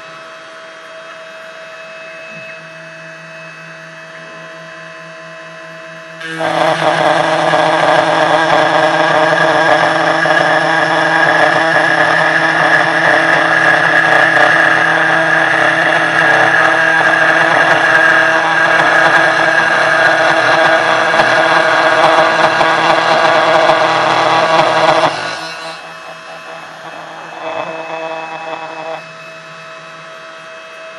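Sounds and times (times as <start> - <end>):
cnc router spindle whining: 0.0 - 30.9
end mill grinding rasp: 6.2 - 29.1.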